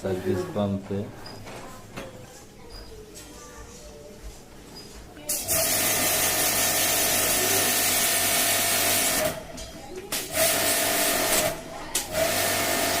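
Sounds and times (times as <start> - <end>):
jet pump whining and hissing: 5.5 - 9.4, 10.2 - 13.0.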